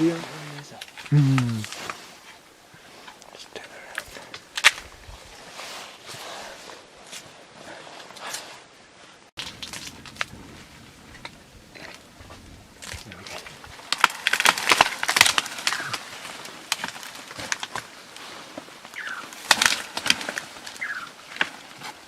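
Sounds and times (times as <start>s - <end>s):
plant stems snapping and crackling: 0.8s - 1.9s, 3.9s - 4.9s, 9.4s - 10.3s, 12.8s - 18.0s, 18.6s - 22.0s
falling bird chirps: 15.6s - 16.0s, 18.9s - 19.4s, 20.7s - 21.2s.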